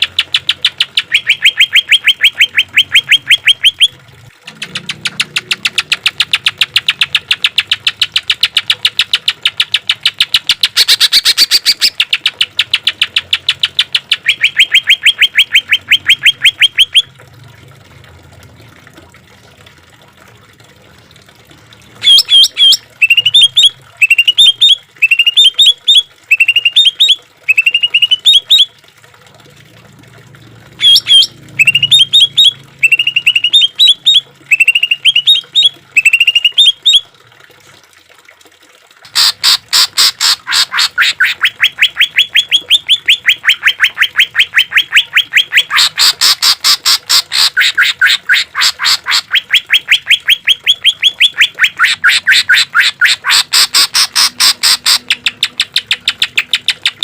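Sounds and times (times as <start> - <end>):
bird repeating sharp notes: 0.0 - 17.1, 30.8 - 36.8, 39.1 - 57.0
bird whistled phrases: 0.4 - 3.9, 14.0 - 17.0, 22.0 - 28.7, 30.8 - 37.0, 40.5 - 46.1, 47.1 - 55.9.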